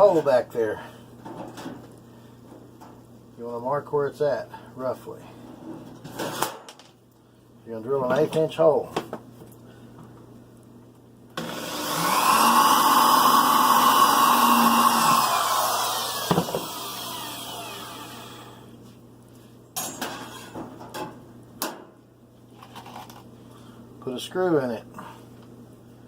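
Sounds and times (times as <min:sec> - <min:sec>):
power drill boring: 0:11.4 - 0:18.5.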